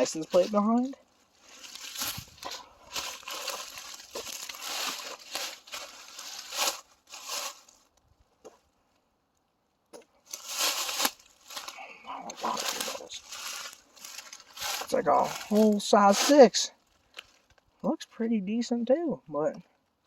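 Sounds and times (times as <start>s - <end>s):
trash rustling and crunching: 0.0s - 7.9s, 10.2s - 17.7s.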